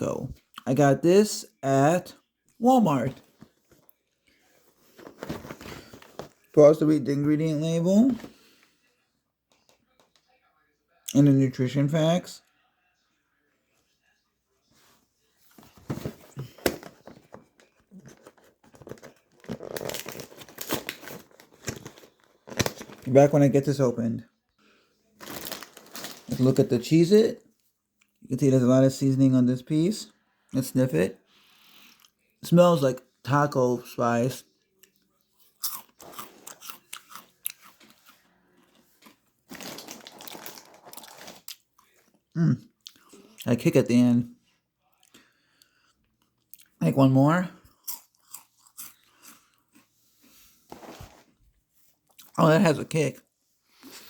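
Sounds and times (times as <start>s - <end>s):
cracker crunch: 15.5s - 23.8s, 25.2s - 26.8s, 34.7s - 43.4s, 47.5s - 51.3s
packaging tearing and crinkling: 18.1s - 23.1s, 25.2s - 26.3s, 39.5s - 41.5s
crackly chewing: 34.6s - 43.4s, 47.6s - 49.9s.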